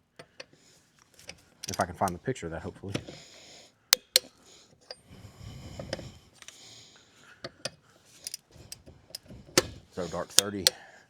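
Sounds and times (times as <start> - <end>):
handling noise: 1.0 - 3.2, 8.2 - 10.7
sharp clicks: 1.2 - 2.2.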